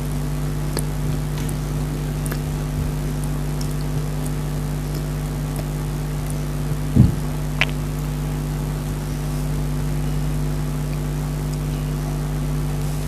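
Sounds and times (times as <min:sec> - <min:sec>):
low mechanical hum: 0:00.0 - 0:13.0
soft thump: 0:07.0 - 0:07.7.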